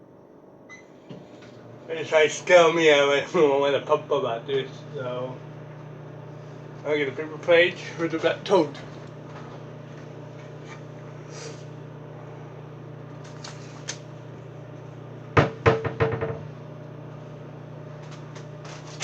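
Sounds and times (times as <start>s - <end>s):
microwave oven humming: 0.0s - 19.0s
clattering knocks: 15.4s - 16.5s.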